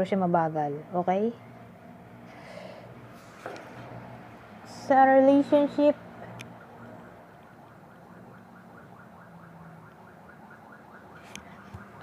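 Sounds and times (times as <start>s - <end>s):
ambulance siren yelping: 6.4s - 12.0s.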